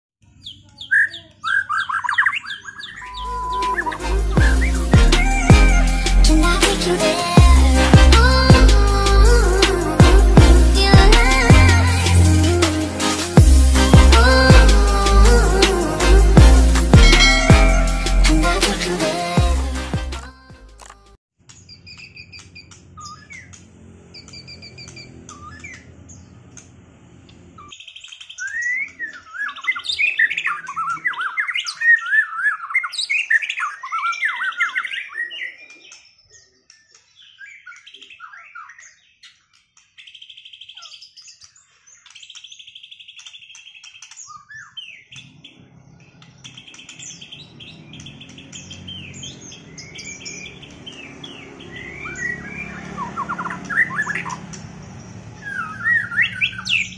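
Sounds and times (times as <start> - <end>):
birds singing whistled phrases: 0.3 - 6.1, 21.5 - 26.3, 27.6 - 56.9.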